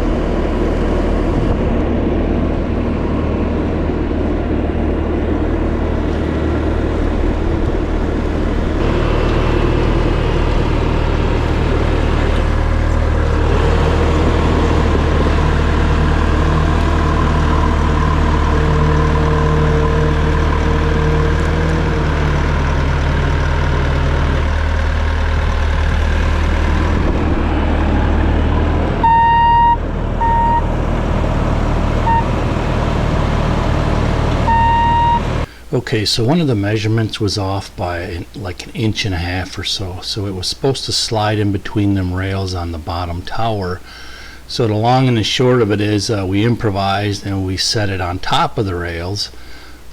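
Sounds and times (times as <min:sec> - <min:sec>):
track loader engine running: 0:00.0 - 0:41.4
reverse alarm beeping: 0:29.0 - 0:30.7, 0:32.0 - 0:32.5, 0:34.4 - 0:35.4.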